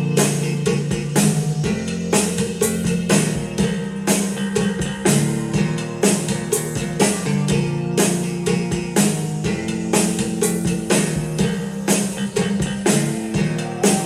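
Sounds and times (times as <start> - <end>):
instrumental song with guitar and drums: 0.0 - 14.0.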